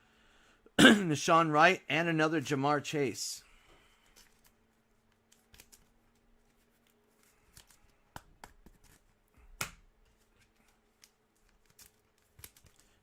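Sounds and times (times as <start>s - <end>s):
trading cards snapping and sliding: 5.3s - 5.9s, 6.8s - 9.0s, 9.6s - 13.0s.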